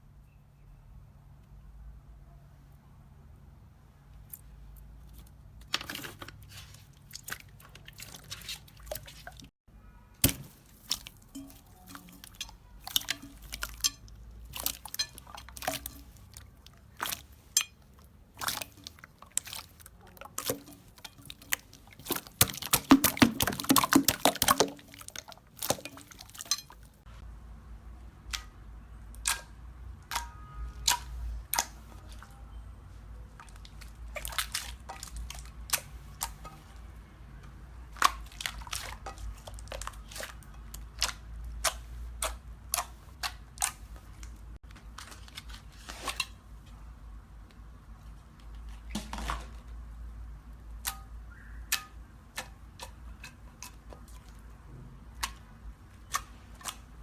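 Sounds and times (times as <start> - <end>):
slime crackling and popping: 18.3 - 26.6.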